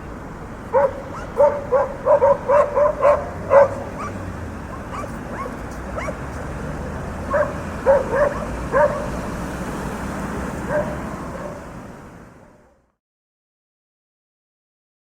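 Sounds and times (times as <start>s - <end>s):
street traffic noise: 0.0s - 13.0s
dogs barking: 0.7s - 9.5s, 10.5s - 11.7s.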